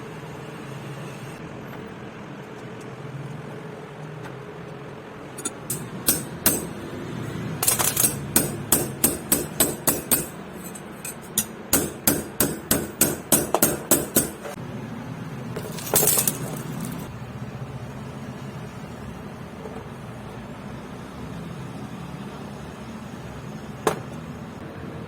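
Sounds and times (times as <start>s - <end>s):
hammer striking metal: 5.4s - 14.6s.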